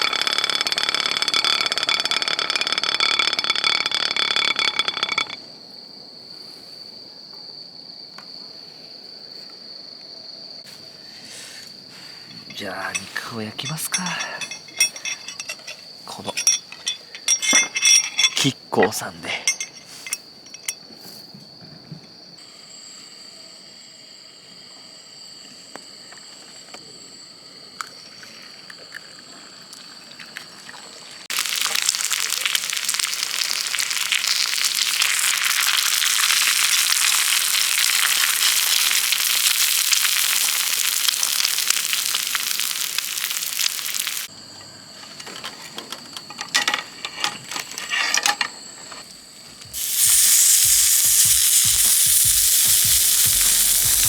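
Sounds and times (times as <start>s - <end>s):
clattering: 0.0s - 5.4s, 12.3s - 18.6s, 19.4s - 20.8s
faint clinks: 0.0s - 5.4s, 11.9s - 21.2s
meat sizzling in a hot pan: 31.3s - 44.3s, 49.7s - 54.0s.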